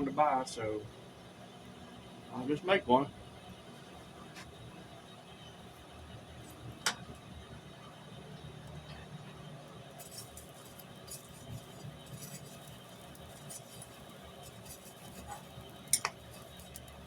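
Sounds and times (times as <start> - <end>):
low steady hum: 0.0 - 17.0
light metallic clinks and ticks: 10.0 - 17.0.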